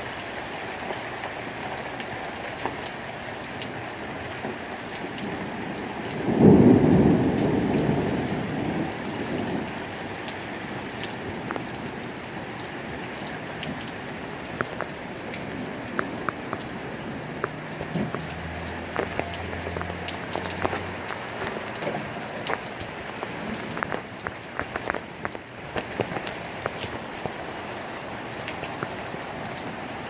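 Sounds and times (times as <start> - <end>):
heavy rain: 0.0 - 30.0
thunder rumbling: 5.1 - 12.2
drops ticking on hard surface: 12.6 - 27.4.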